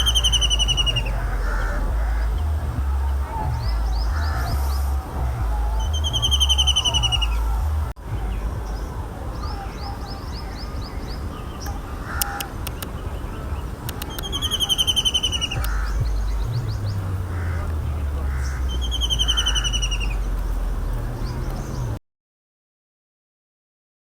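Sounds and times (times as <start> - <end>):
kingfisher rattling call: 0.0 - 7.9, 11.6 - 13.0, 13.8 - 21.8
low rumble: 0.0 - 12.6, 15.4 - 22.0
small birds chirping faintly: 0.0 - 22.0.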